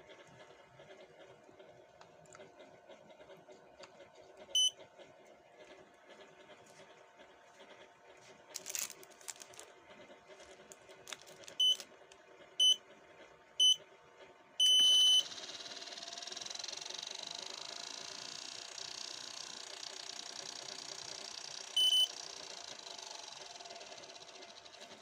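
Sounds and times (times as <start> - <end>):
treadmill motor whine: 0.0 - 25.0
treadmill console beeps: 4.5 - 4.8, 11.5 - 11.9, 12.6 - 12.8, 13.6 - 13.9, 14.6 - 18.3, 21.6 - 22.6.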